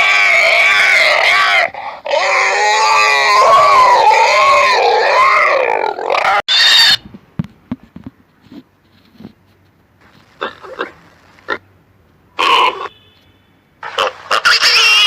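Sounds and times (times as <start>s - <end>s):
pig squealing: 0.0s - 7.0s, 10.4s - 11.6s, 12.4s - 12.9s, 13.8s - 15.0s
pig grunting: 10.4s - 11.6s.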